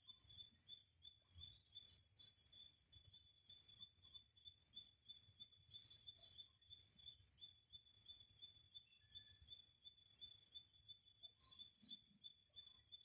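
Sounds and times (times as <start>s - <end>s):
crickets and insects chirping: 0.1s - 13.0s.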